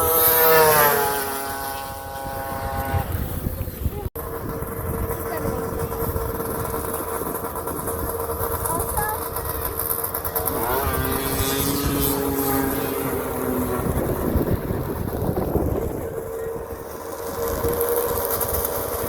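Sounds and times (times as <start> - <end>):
snowmobile engines revving: 0.0 - 19.0.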